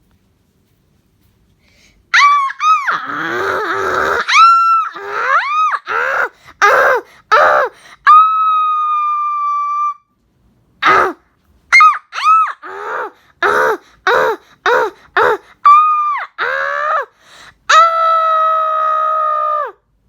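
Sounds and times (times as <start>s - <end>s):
person screaming: 2.2s - 10.0s, 10.8s - 11.2s, 11.8s - 17.1s, 17.7s - 19.8s.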